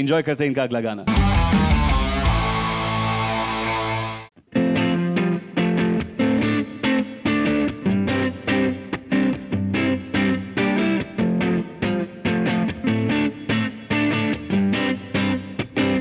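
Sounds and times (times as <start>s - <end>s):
rock band held chord: 1.1s - 4.3s
distorted electric guitar chords: 1.1s - 16.0s.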